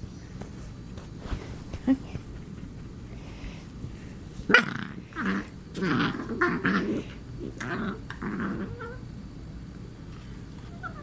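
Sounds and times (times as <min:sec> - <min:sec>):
puppy growling: 0:04.4 - 0:09.2, 0:10.6 - 0:11.0.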